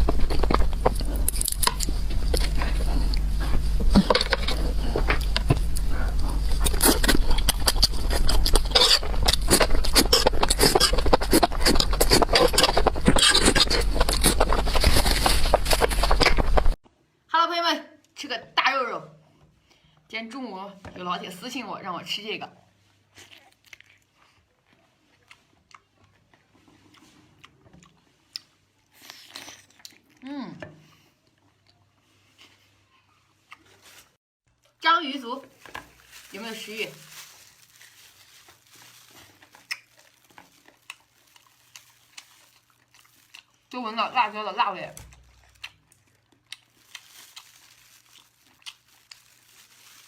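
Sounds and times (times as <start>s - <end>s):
person chewing with mouth clicks: 0.0s - 16.8s, 23.1s - 30.2s, 39.3s - 43.7s, 45.0s - 49.4s.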